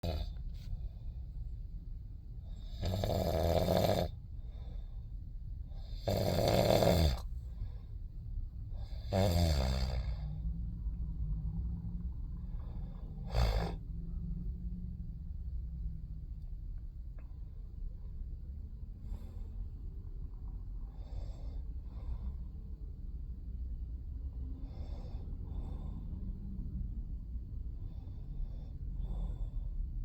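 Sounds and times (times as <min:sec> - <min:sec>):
loud snores: 0:00.0 - 0:00.4, 0:02.6 - 0:04.2, 0:05.8 - 0:07.3, 0:08.8 - 0:10.3, 0:13.2 - 0:13.8
steady low hum: 0:00.0 - 0:30.0.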